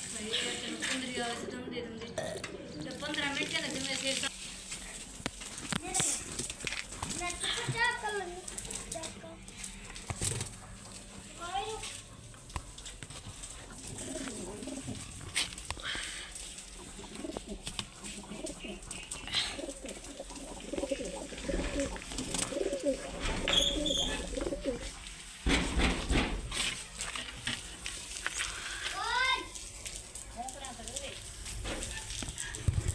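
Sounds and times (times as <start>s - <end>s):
pigeons cooing: 9.6s - 27.0s.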